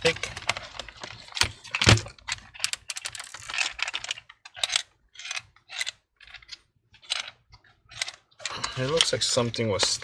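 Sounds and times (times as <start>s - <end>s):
plastic pieces rattling in case: 1.4s - 4.8s.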